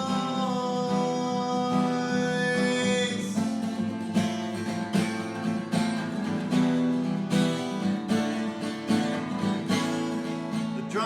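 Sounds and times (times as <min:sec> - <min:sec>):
person singing: 0:00.0 - 0:03.6, 0:10.7 - 0:11.0
acoustic guitar strumming chords: 0:00.0 - 0:11.0.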